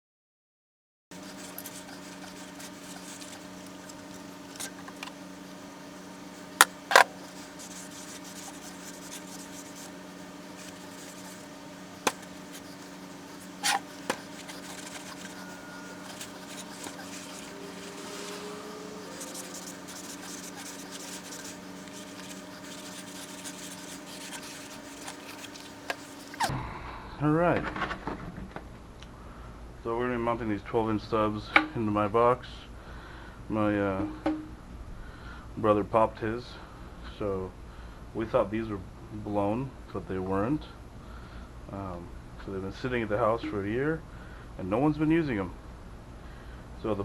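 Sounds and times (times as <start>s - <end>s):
electrical hum: 1.1s - 27.1s.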